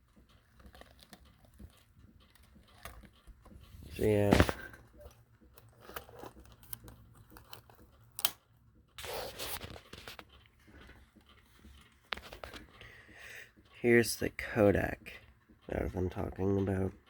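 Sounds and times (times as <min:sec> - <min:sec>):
rustling: 0:00.0 - 0:08.4.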